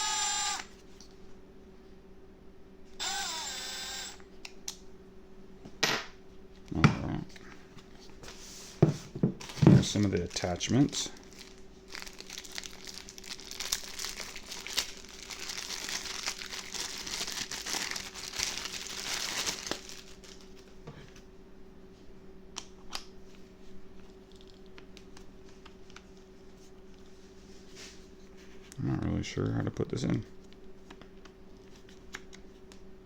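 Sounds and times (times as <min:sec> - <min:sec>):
packaging crinkling: 0:09.4 - 0:20.7.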